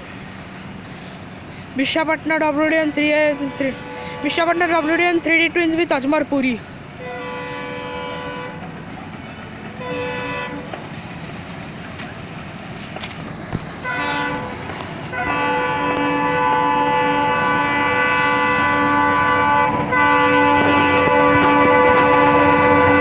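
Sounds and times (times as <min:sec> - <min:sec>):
passing train: 0:00.0 - 0:23.0
locomotive air horn blasts: 0:03.1 - 0:05.3, 0:07.0 - 0:08.6, 0:09.7 - 0:10.7, 0:13.8 - 0:23.0.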